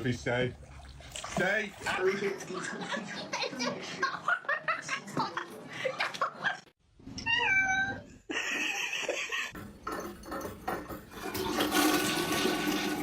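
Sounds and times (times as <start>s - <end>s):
cat meowing: 7.2s - 8.0s.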